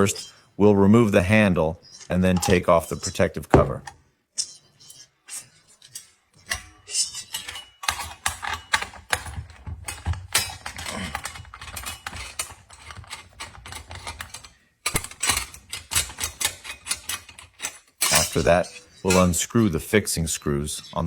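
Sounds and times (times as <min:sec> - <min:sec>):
plastic and metal parts rattling: 0:01.9 - 0:04.0, 0:06.4 - 0:20.0.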